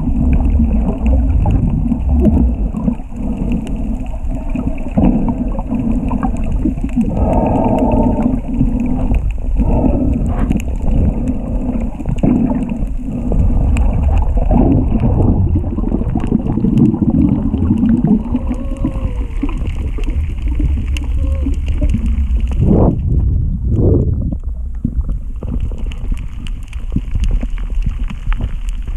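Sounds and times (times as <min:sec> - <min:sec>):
low rumble: 0:00.0 - 0:28.9
underwater bubbling and gurgling: 0:00.0 - 0:28.9.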